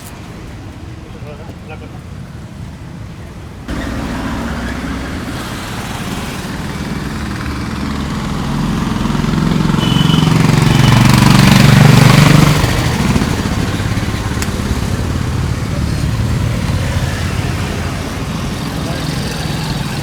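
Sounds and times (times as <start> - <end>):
motor running: 6.6 - 15.2.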